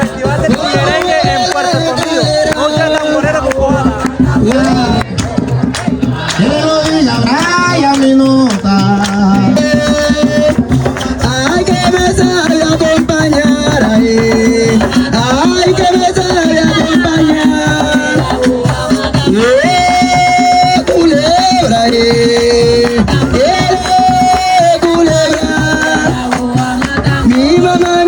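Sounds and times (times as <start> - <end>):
hand drums: 0.0 - 28.0
person singing long notes: 6.1 - 28.0.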